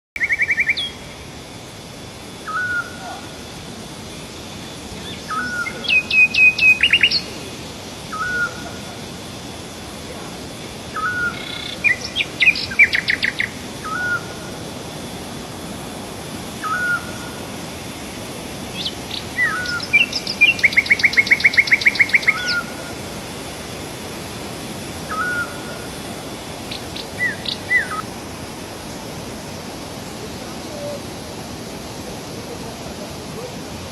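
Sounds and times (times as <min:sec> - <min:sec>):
birds singing: 0:00.2 - 0:01.2, 0:02.4 - 0:03.1, 0:04.1 - 0:07.4, 0:08.1 - 0:08.8, 0:10.9 - 0:14.5, 0:16.6 - 0:17.4, 0:18.7 - 0:23.0, 0:25.1 - 0:28.1
background hiss: 0:00.2 - 0:33.9.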